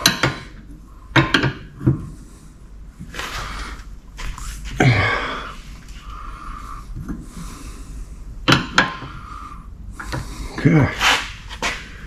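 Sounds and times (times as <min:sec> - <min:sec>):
breathy exhale: 0:04.5 - 0:11.3.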